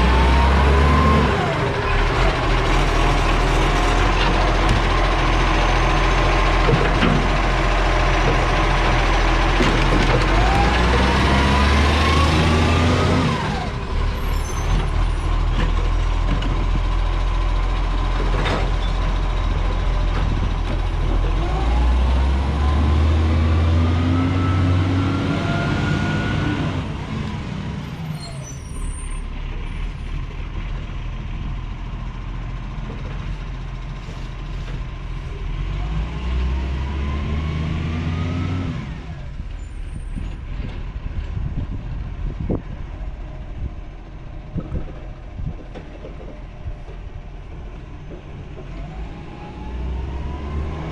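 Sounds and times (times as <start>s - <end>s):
garbage truck diesel engine revving: 0.0s - 28.0s, 35.3s - 39.5s, 47.5s - 50.9s.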